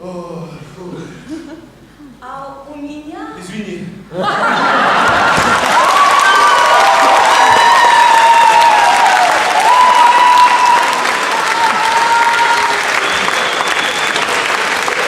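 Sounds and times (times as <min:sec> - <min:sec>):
audience applauding: 0:04.6 - 0:15.0.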